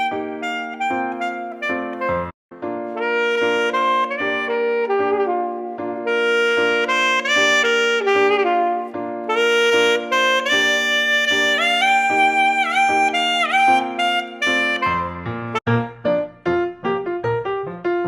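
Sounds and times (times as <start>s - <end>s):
saxophone playing melody: 0.0s - 15.7s.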